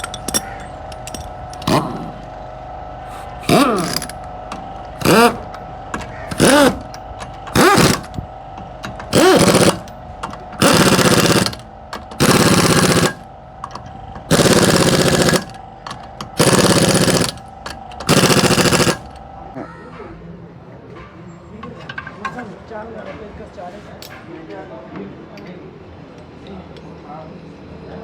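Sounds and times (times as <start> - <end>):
impact wrench hammering: 0.0 - 2.2, 3.1 - 19.2.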